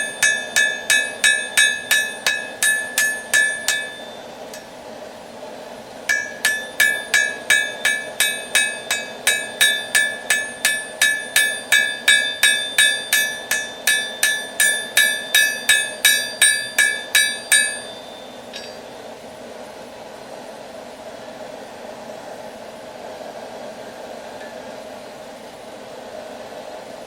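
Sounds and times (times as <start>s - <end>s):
hammer striking metal on anvil: 0.0s - 4.7s, 6.1s - 18.9s.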